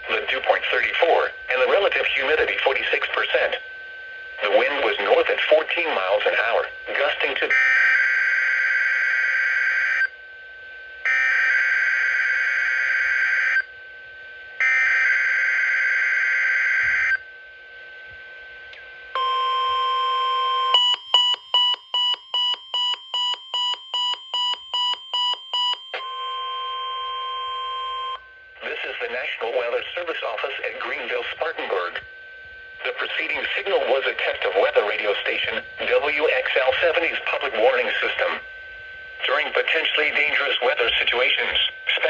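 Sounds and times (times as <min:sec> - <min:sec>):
radio alert beeping: 0:39.2 - 0:42.0.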